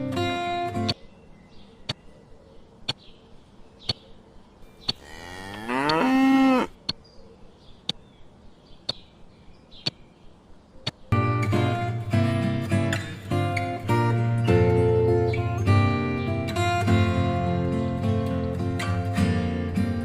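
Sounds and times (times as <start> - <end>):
strummed guitar music: 0.0 - 1.0, 11.2 - 20.0
cow mooing: 5.0 - 6.8.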